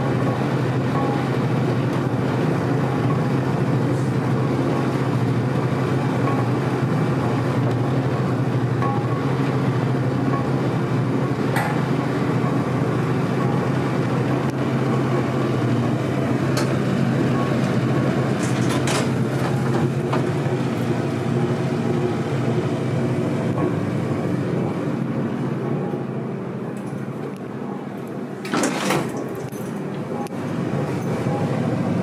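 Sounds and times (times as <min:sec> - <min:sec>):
elevator loud hum: 0:00.0 - 0:32.0
clicks and knocks in elevator car: 0:18.4 - 0:20.5, 0:28.4 - 0:30.3.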